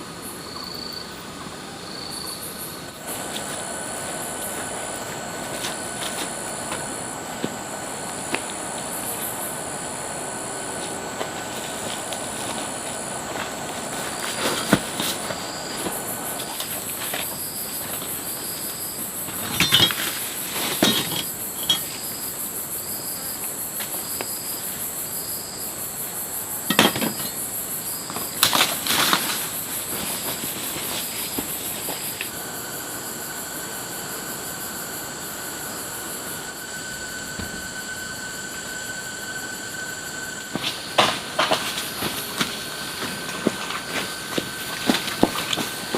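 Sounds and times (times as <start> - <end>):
high-pitched insect chorus: 0.0 - 45.9
slow pulsed insect call: 0.0 - 45.9
sharp knocks and crackles: 40.5 - 45.9.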